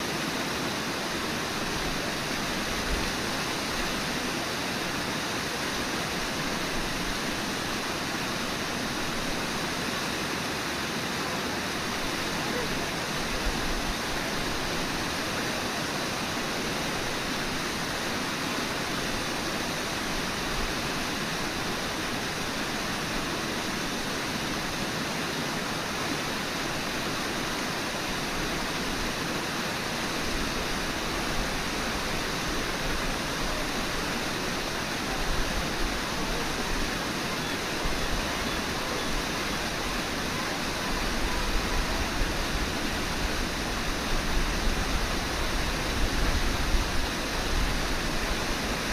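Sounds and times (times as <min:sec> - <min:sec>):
river water rushing: 0:00.0 - 0:48.9.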